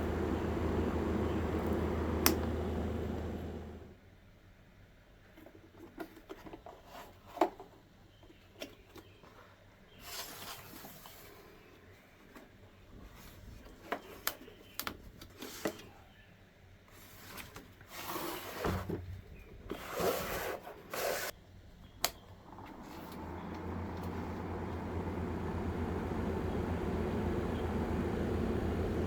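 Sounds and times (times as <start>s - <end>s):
small fan motor humming: 0.0s - 4.0s, 22.0s - 29.0s.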